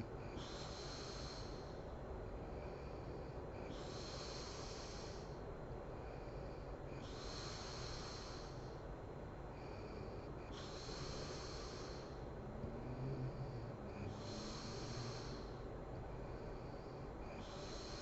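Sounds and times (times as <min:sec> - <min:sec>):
woman snoring heavily: 0:09.8 - 0:15.6, 0:16.2 - 0:18.0.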